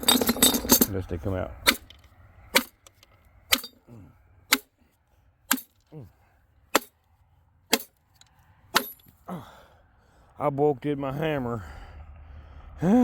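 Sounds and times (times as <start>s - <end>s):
hammer striking metal: 1.6s - 3.8s, 4.5s - 4.7s, 5.5s - 5.8s, 6.7s - 7.0s, 7.7s - 8.0s, 8.7s - 9.1s.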